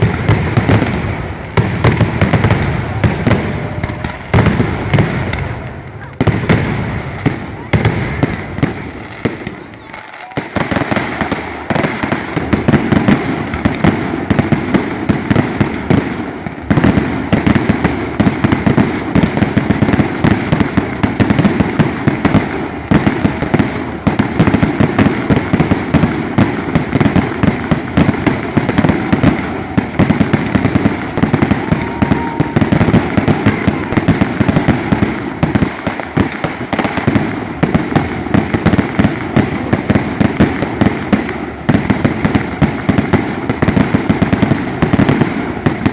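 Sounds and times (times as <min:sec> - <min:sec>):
fireworks bangs and crackles: 0:00.0 - 0:45.9.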